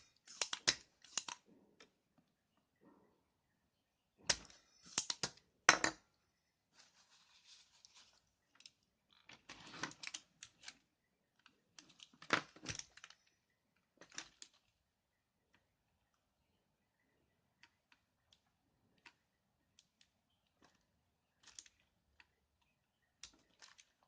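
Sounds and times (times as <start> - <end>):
keyboard parts clicking and rattling: 11.4 - 13.2, 23.2 - 24.0.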